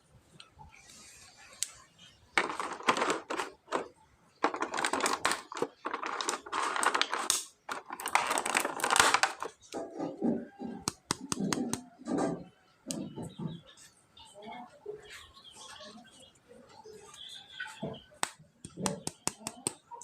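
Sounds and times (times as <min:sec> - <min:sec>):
plastic packaging crinkling: 0:02.4 - 0:09.7.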